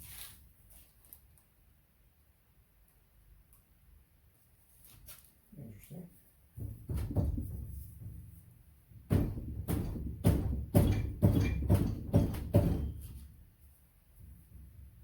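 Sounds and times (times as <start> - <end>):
sharp ringing knocks: 9.1 - 13.2.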